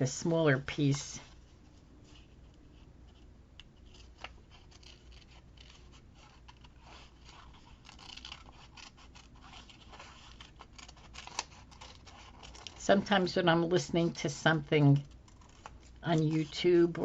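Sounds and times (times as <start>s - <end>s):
paper rustling: 0.2s - 17.0s
scissors snipping paper: 4.0s - 17.0s.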